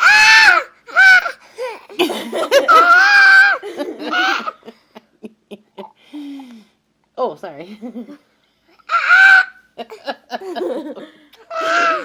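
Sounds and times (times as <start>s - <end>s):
baby squealing and laughing: 0.0s - 4.6s, 8.8s - 9.6s, 11.5s - 12.0s.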